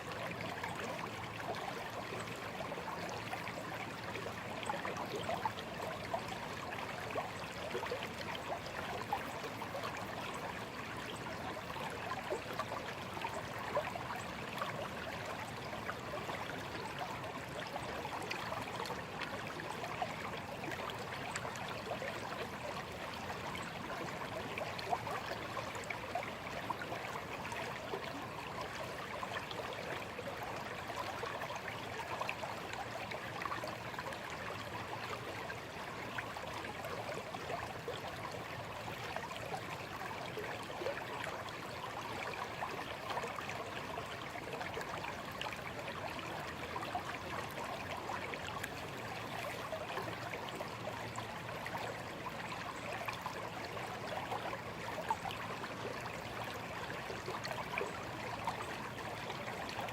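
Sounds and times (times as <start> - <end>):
stream trickling over stones: 0.0 - 59.9.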